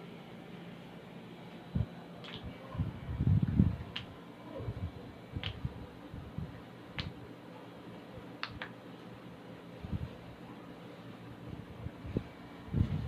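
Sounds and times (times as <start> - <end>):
sharp body clicks: 2.2 - 2.5, 3.9 - 4.1, 5.4 - 5.6, 7.0 - 7.2, 8.4 - 8.8.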